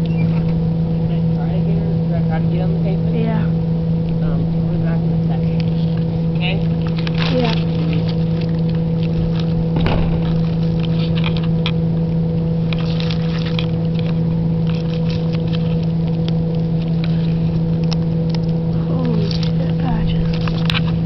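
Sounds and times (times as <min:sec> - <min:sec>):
steady motor hum: 0:00.0 - 0:21.0
small clicks and crackles: 0:05.5 - 0:21.0.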